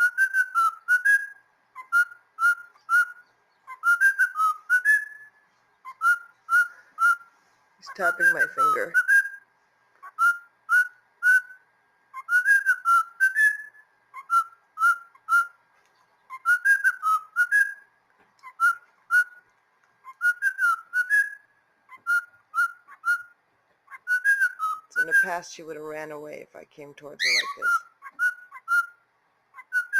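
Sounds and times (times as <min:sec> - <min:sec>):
cockatiel whistling a tune: 0:00.0 - 0:15.6, 0:16.2 - 0:25.4, 0:27.2 - 0:29.9.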